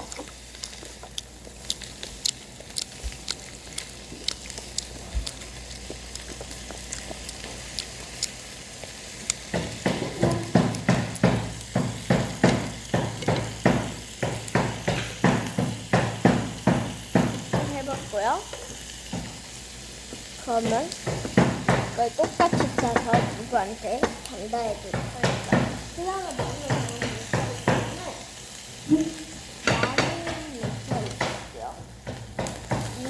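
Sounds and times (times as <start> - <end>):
loud rhythmic chewing: 0.0 - 16.5
fat popping: 0.0 - 19.4
meat sizzling in a pan: 0.0 - 33.0.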